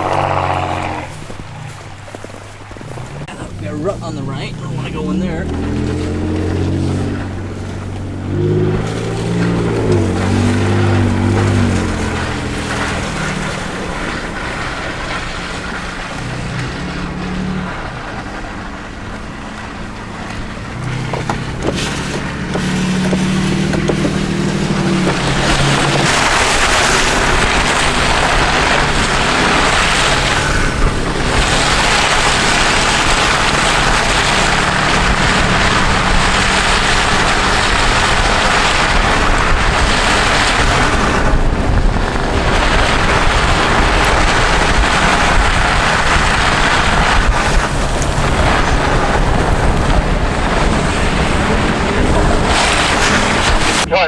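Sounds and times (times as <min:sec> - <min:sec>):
loud steady rushing noise: 0:00.0 - 0:54.0
truck engine while driving: 0:00.0 - 0:54.0.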